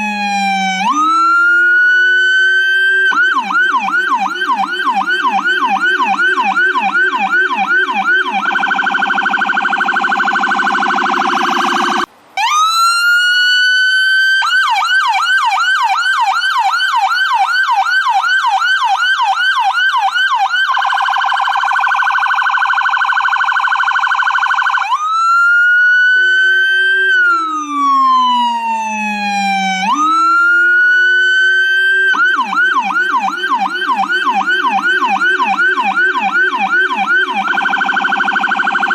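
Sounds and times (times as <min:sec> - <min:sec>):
ambulance siren: 0:00.0 - 0:38.9.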